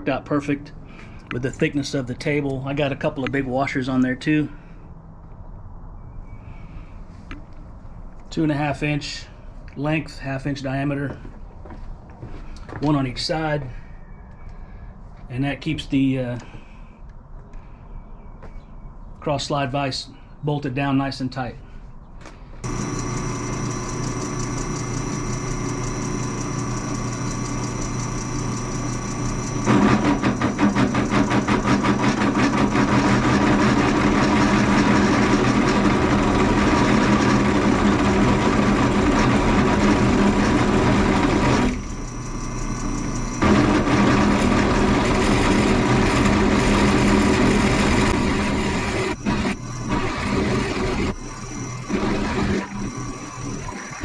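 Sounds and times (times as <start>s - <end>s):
drill bit grinding with rattle: 22.6s - 54.0s
drill press motor humming: 22.6s - 54.0s.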